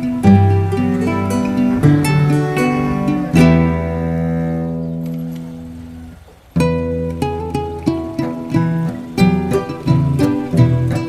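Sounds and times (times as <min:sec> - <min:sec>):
steady low bass: 0:00.0 - 0:07.6
plucked-string melody: 0:00.0 - 0:11.0.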